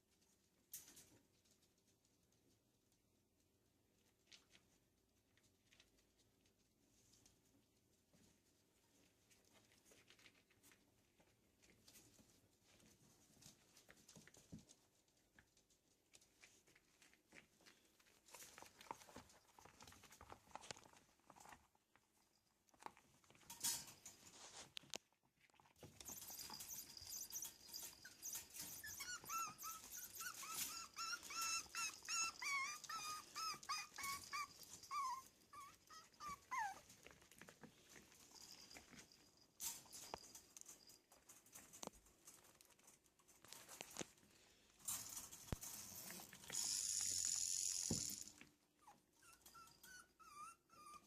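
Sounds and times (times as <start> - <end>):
puppies scuffling and clicking: 0.0 - 51.0
puppy whimpering: 26.0 - 37.3, 48.8 - 51.0.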